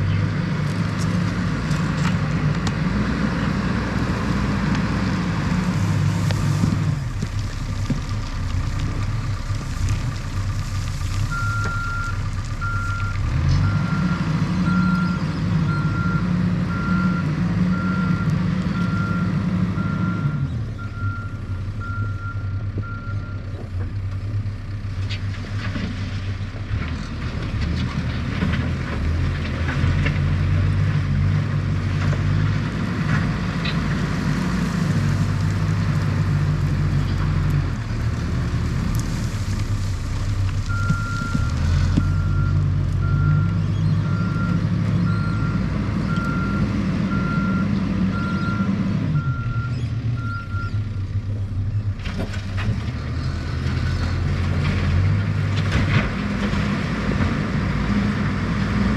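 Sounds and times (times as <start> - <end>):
diesel engine revving under load: 0.0 - 58.9.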